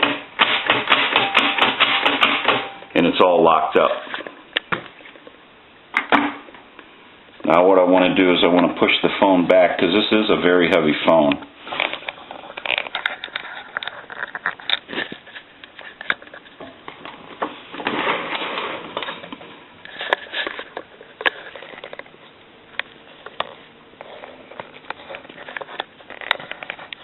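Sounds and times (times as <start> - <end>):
payphone knocks and clicks: 0.8 - 2.8.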